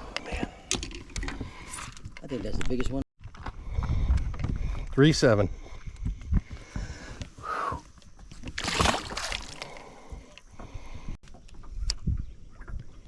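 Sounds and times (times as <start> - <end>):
water sloshing around a boat: 8.2 - 11.4
water splash: 8.6 - 9.7.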